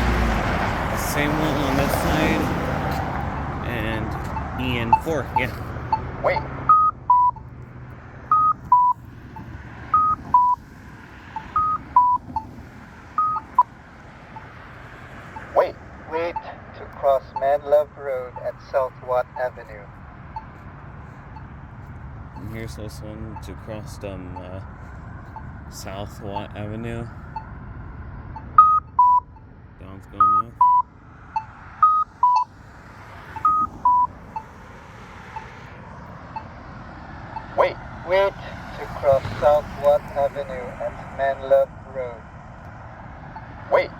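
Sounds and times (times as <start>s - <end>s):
soft locator ticks: 0.0s - 10.6s, 11.4s - 23.6s
descending two-note beeps: 1.1s - 7.5s, 33.4s - 34.5s.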